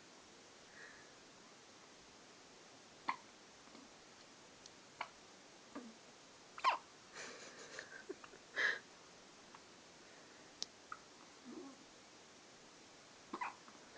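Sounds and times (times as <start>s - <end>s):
snuffling breath: 8.5s - 8.8s.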